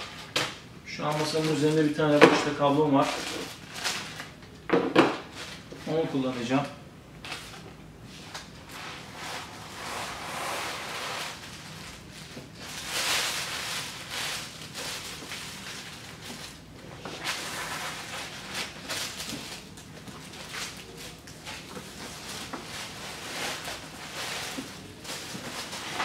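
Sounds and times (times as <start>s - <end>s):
rustling and handling noises: 0.0s - 26.0s.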